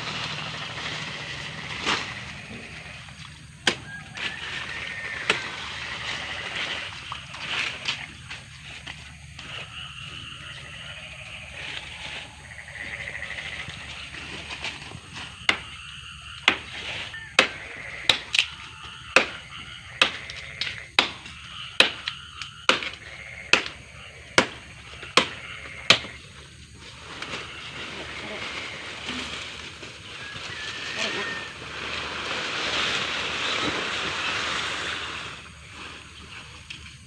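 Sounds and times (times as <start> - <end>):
blade chopping wood: 22.7 - 23.8.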